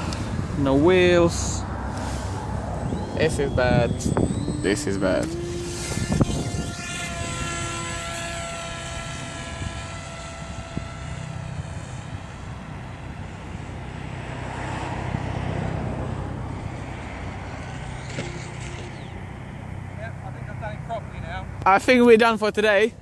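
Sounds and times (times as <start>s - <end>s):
model plane motor whining: 1.9s - 15.3s, 16.0s - 20.4s.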